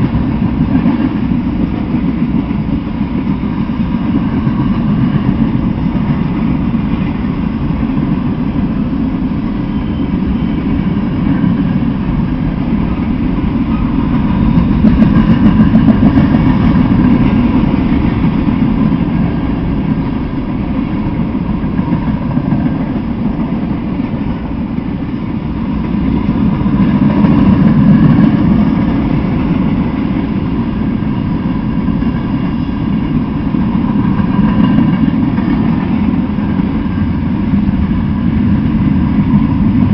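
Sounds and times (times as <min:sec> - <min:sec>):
freight train rolling past: 0:00.0 - 0:39.9.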